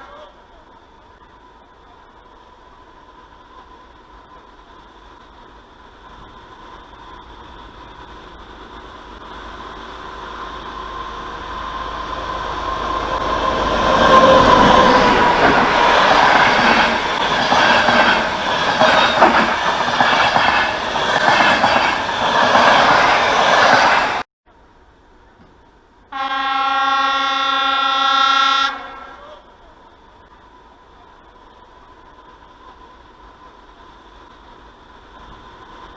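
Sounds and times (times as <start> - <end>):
train wheels clacking on rails: 12.4 - 24.2
train horn blast: 26.1 - 29.4.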